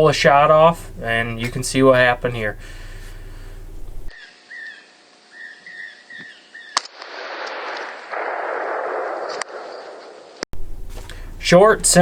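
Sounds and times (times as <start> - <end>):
rifle shot: 6.8 - 10.4.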